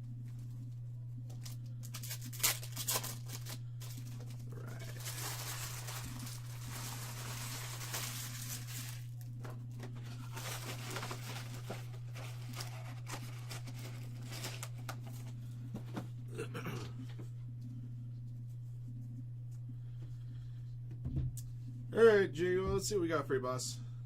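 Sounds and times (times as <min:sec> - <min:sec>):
low hum: 0:00.0 - 0:24.0
wrappers tearing and crinkling: 0:01.3 - 0:09.3, 0:10.0 - 0:15.4.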